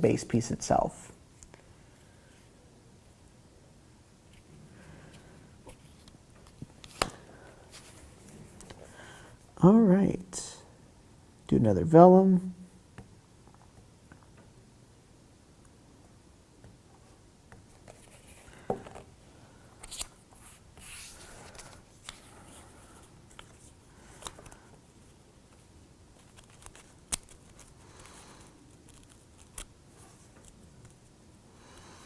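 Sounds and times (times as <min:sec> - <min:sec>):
paper rustling: 0:25.5 - 0:30.9.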